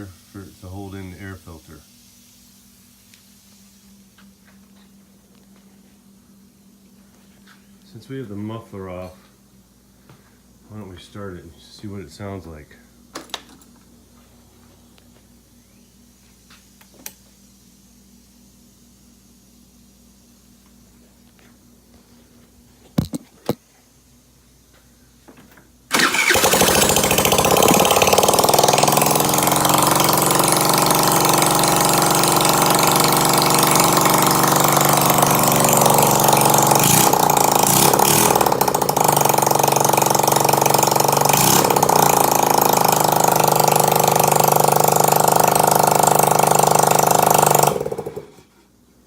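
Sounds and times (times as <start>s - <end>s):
scooter engine running loud: 25.9s - 48.4s.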